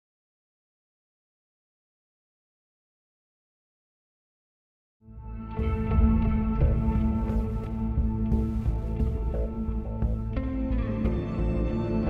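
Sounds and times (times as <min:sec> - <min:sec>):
ambient music with low drone: 0:05.0 - 0:12.0.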